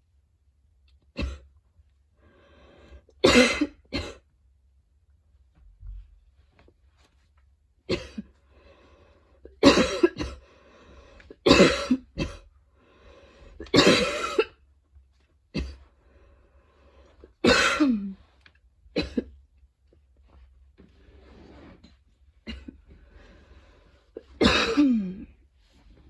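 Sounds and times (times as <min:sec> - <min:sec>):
woman coughing: 0:01.2 - 0:01.5, 0:03.2 - 0:04.2, 0:07.9 - 0:08.2, 0:09.6 - 0:10.4, 0:11.4 - 0:12.4, 0:13.7 - 0:14.6, 0:17.4 - 0:18.2, 0:19.0 - 0:19.3, 0:24.3 - 0:25.3
faint wheezing breaths: 0:02.2 - 0:03.2, 0:12.7 - 0:13.7.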